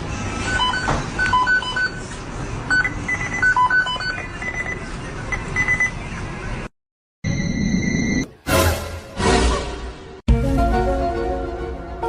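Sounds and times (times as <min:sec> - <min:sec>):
steady background noise: 0:00.0 - 0:06.7.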